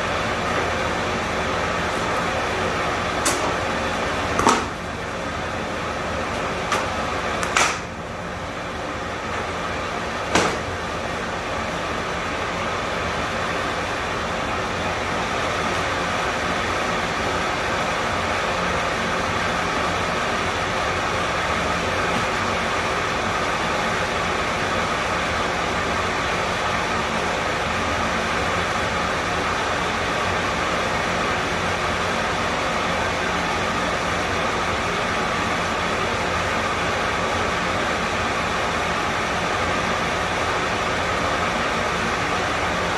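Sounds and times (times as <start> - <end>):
sharp knocks: 4.4 - 4.8, 10.3 - 10.7.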